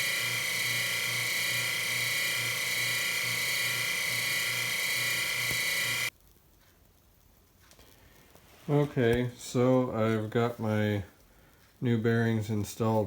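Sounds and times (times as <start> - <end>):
power tool whining and humming: 0.0 - 6.1.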